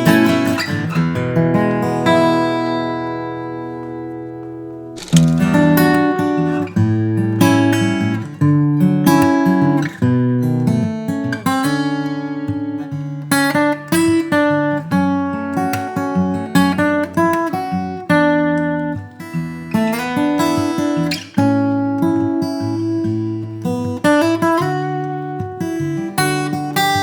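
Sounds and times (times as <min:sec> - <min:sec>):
acoustic guitar chords ringing: 0:00.0 - 0:27.0.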